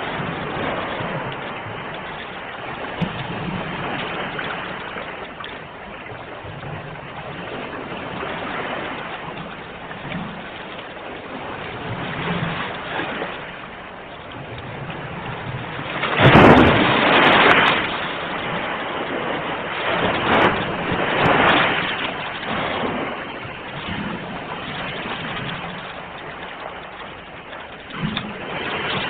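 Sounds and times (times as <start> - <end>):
sea waves breaking: 0.0 - 29.0.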